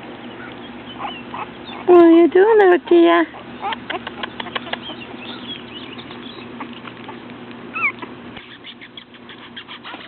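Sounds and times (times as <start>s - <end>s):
puppy squeak: 0.4s - 1.9s, 3.4s - 10.0s.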